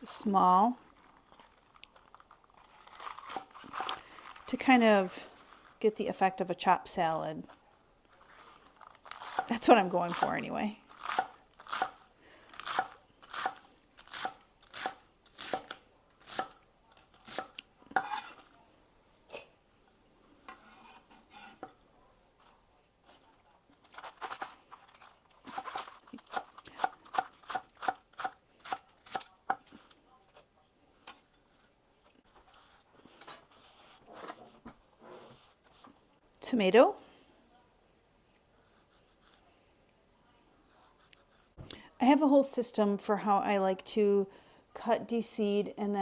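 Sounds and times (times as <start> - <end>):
lettuce rustling: 0.8 - 4.6, 7.5 - 14.8, 22.4 - 30.0.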